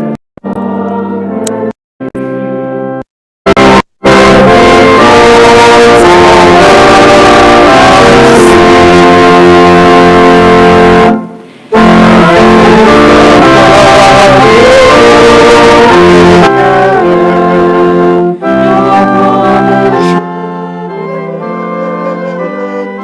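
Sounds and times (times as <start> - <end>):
instrumental hymn music: 0.0 - 23.0.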